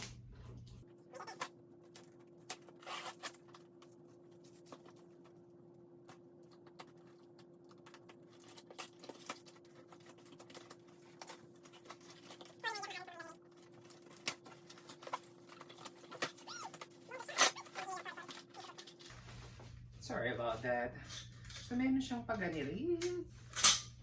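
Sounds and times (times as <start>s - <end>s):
clicks and rustles of handling parts: 6.0s - 19.7s, 21.0s - 21.8s.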